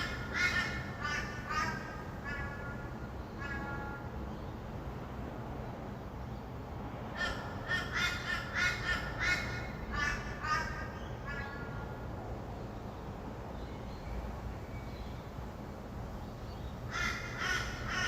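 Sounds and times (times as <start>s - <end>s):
bird calling loudly: 0.0s - 4.4s, 7.1s - 12.0s, 16.9s - 18.0s
distant traffic hum: 0.0s - 18.0s.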